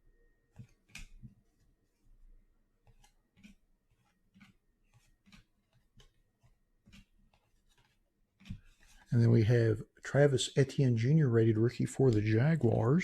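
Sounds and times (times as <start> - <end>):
trading cards flipped by hand: 0.5 - 9.1.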